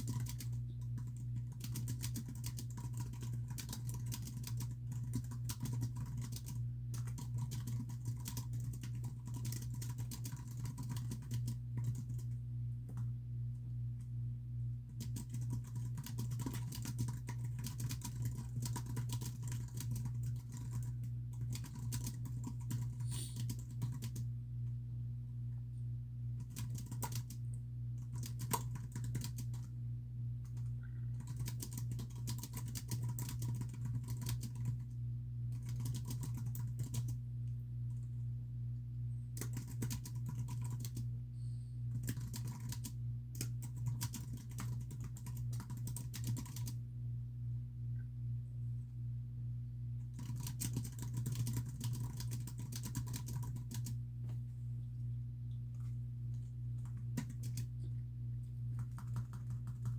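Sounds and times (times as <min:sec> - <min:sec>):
typing on computer keyboard: 0:00.0 - 0:13.1, 0:14.9 - 0:24.3, 0:26.4 - 0:29.7, 0:30.4 - 0:37.2, 0:39.4 - 0:41.1, 0:41.9 - 0:46.8, 0:50.1 - 0:54.0, 0:55.7 - 0:57.8, 0:58.7 - 0:59.9
steady low hum: 0:00.0 - 0:59.9.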